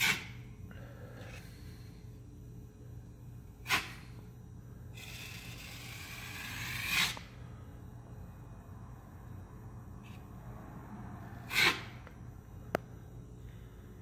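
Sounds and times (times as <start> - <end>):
putty knife scraping drywall: 0.0 - 0.4, 3.6 - 4.0, 5.0 - 7.2, 11.5 - 12.0.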